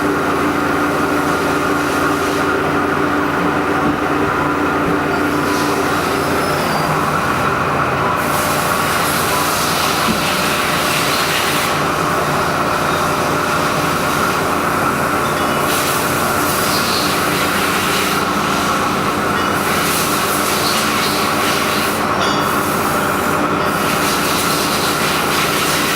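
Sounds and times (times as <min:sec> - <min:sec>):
high machine whine: 0:00.0 - 0:25.9
machine mechanical hum: 0:00.0 - 0:25.9
machine hiss: 0:13.0 - 0:25.9.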